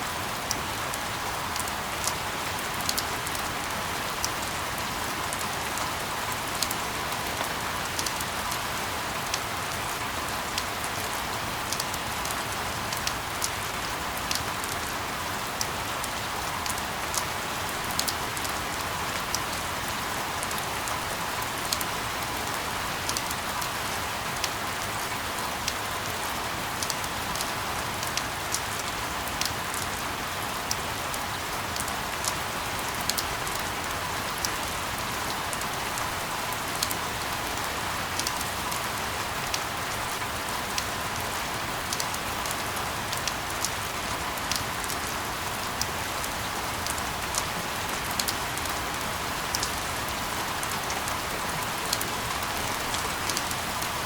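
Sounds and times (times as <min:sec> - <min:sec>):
steady rain hiss: 0:00.0 - 0:54.0
raindrop ticks: 0:49.4 - 0:54.0.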